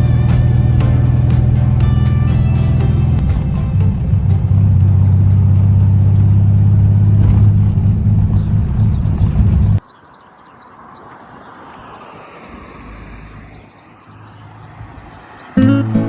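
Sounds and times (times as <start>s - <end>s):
car engine droning: 0.0s - 9.8s
quiet outdoor ambience: 9.8s - 16.0s.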